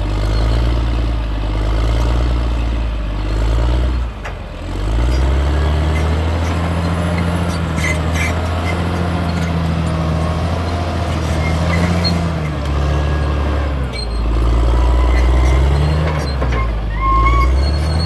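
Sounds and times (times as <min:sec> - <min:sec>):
bulldozer diesel engine running: 0:00.0 - 0:18.0
short high squeaks: 0:05.9 - 0:12.5, 0:13.9 - 0:18.0.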